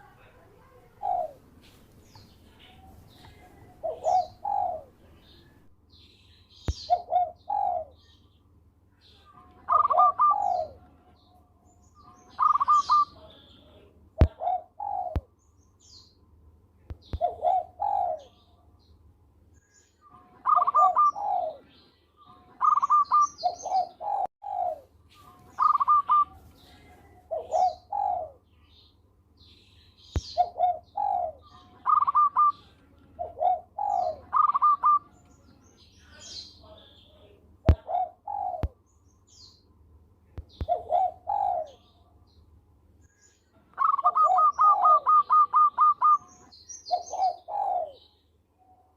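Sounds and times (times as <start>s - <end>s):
dove cooing: 0.0s - 1.5s, 2.6s - 5.4s, 6.8s - 8.1s, 9.7s - 10.9s, 12.3s - 13.2s, 14.2s - 15.3s, 17.1s - 18.4s, 20.4s - 21.7s, 22.6s - 28.4s, 30.2s - 35.2s, 37.7s - 38.8s, 40.6s - 41.9s, 43.8s - 48.1s
high bird chirps: 11.9s - 13.2s, 19.6s - 21.6s, 22.2s - 28.7s, 29.6s - 36.6s, 43.0s - 48.2s.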